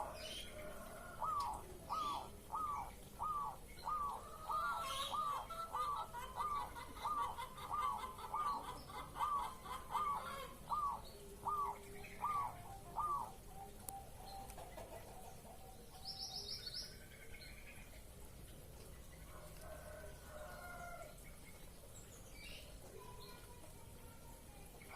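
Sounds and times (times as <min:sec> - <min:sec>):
dove cooing: 0:00.0 - 0:16.2
small bird chattering: 0:01.2 - 0:13.4.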